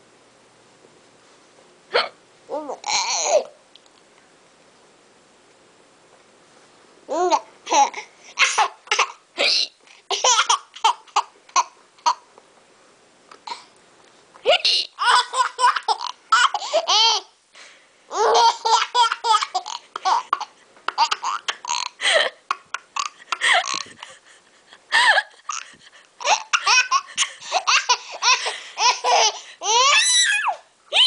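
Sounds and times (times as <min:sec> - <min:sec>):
woman hiccuping: 0:01.9 - 0:02.2
baby laughing: 0:07.1 - 0:12.3, 0:14.5 - 0:17.3, 0:18.1 - 0:24.2, 0:24.9 - 0:31.0.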